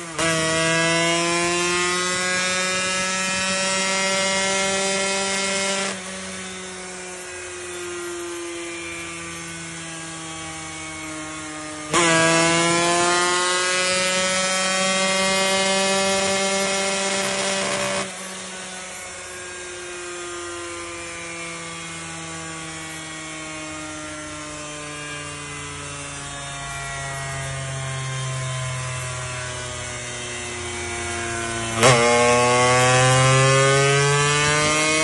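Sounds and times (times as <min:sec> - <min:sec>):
racing motorcycle engine revving: 0:00.0 - 0:35.0.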